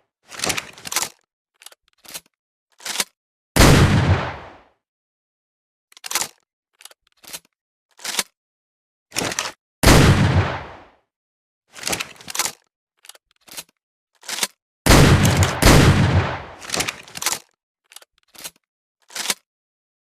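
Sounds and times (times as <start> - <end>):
gun action clicks and clacks: 0.3 - 3.2, 5.9 - 8.4, 9.1 - 9.6, 11.7 - 19.5
shotgun shot with echo: 3.6 - 4.6, 9.8 - 10.8, 14.9 - 16.6.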